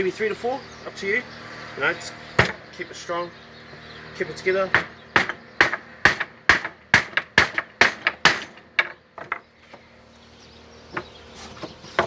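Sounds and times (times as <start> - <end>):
hammer striking wood: 2.4 - 2.6, 4.7 - 9.4.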